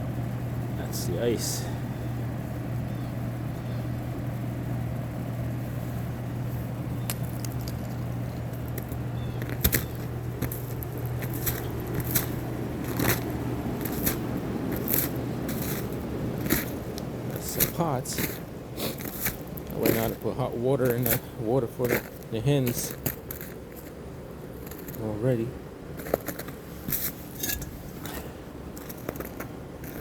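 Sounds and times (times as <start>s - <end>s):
steady low hum: 0.0s - 30.0s
ice crunching and cracking: 7.1s - 30.0s.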